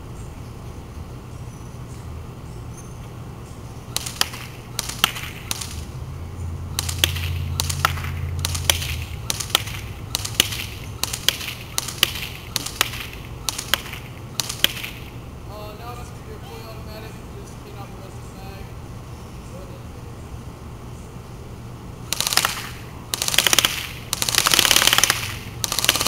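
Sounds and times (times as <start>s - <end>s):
airsoft gun shots: 4.0s - 5.8s, 6.8s - 15.1s, 22.1s - 26.0s.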